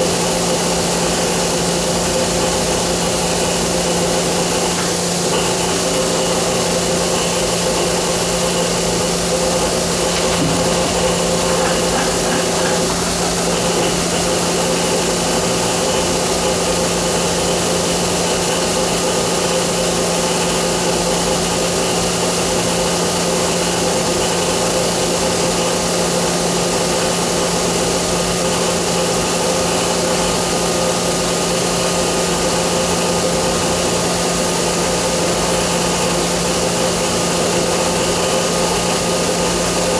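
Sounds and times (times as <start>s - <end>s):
machine hum with hiss: 0.0s - 31.6s.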